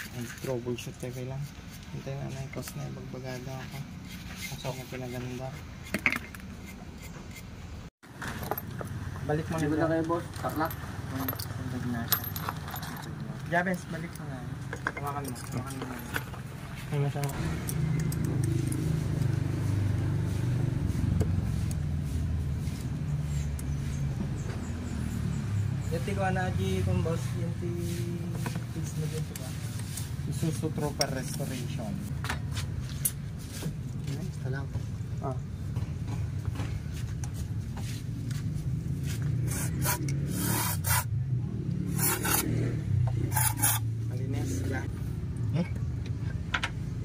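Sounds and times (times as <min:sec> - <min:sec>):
scraping and brushing engine part: 0:00.0 - 0:07.6, 0:41.8 - 0:44.0
vehicle engine running: 0:16.4 - 0:29.3.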